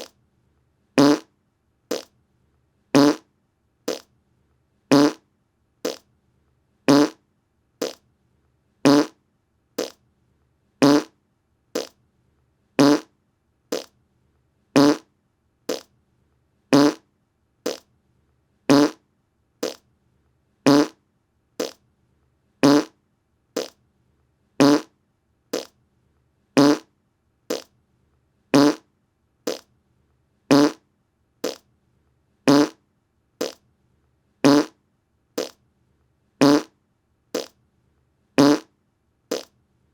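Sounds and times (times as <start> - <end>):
fart sounds: 1.0 - 1.3, 1.9 - 2.1, 3.0 - 3.3, 3.9 - 4.1, 4.9 - 5.2, 5.8 - 6.0, 6.9 - 7.2, 7.8 - 8.0, 8.9 - 9.2, 9.8 - 10.0, 10.8 - 11.2, 11.8 - 12.0, 12.8 - 13.1, 13.7 - 13.9, 14.8 - 15.1, 15.7 - 15.9, 16.7 - 17.0, 17.7 - 17.9, 18.7 - 19.0, 19.6 - 19.8, 20.7 - 21.0, 21.6 - 21.8, 22.6 - 23.0, 23.6 - 23.8, 24.6 - 24.9, 26.6 - 26.9, 27.5 - 27.7, 28.6 - 28.8, 29.5 - 29.7, 30.5 - 30.8, 31.4 - 31.6, 32.5 - 32.8, 33.4 - 33.6, 34.4 - 34.8, 35.4 - 35.6, 36.4 - 36.7, 37.4 - 37.6, 38.4 - 38.7, 39.3 - 39.5.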